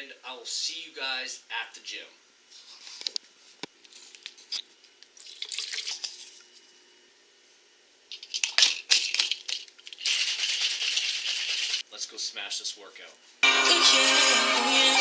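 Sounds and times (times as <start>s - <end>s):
liquid pouring: 5.2s - 6.4s
containers clicking and knocking: 8.1s - 11.8s
shaker bottle rattling: 8.1s - 11.8s.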